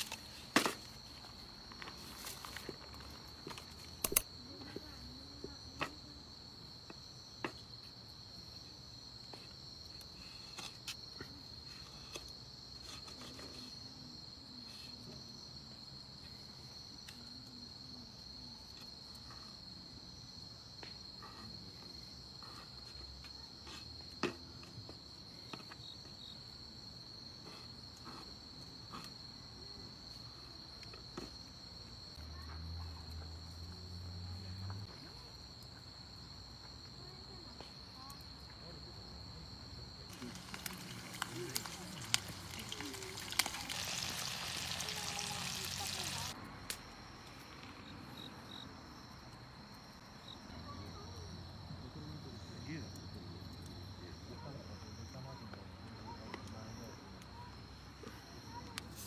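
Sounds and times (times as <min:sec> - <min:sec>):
insects trilling: 0:15.2 - 0:49.3.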